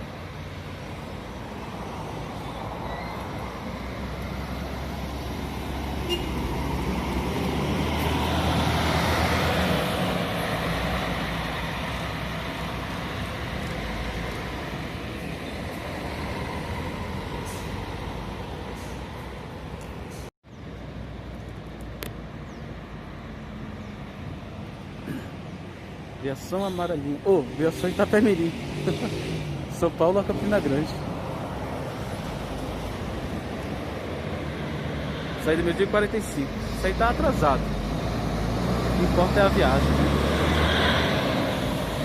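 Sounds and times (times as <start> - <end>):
bus engine passing by: 0.0 - 26.2, 27.1 - 42.0.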